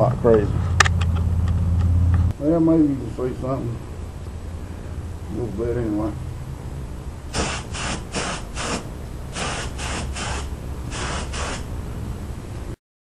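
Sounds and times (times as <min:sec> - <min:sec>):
steady low hum: 0:00.0 - 0:12.8
spray gun hissing bursts: 0:07.3 - 0:11.7.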